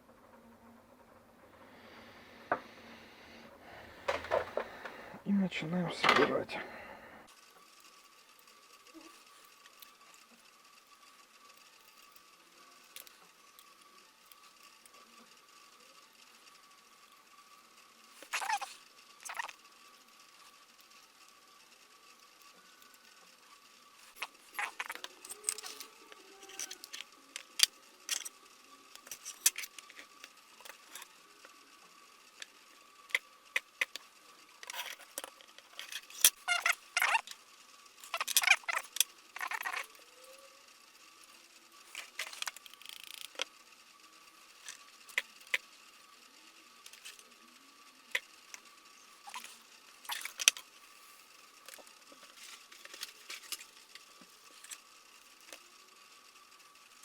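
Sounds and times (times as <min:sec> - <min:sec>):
plastic parts clicking and rattling: 0:04.0 - 0:05.0, 0:24.0 - 0:28.4, 0:29.0 - 0:31.6, 0:33.1 - 0:37.4, 0:38.0 - 0:39.9, 0:41.9 - 0:43.5, 0:48.1 - 0:50.7, 0:51.6 - 0:55.6.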